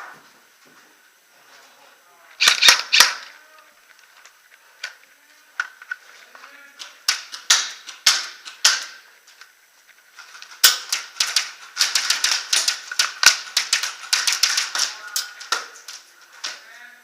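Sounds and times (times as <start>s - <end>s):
airsoft gunfire: 2.4s - 3.3s, 7.1s - 9.0s, 10.6s - 15.7s.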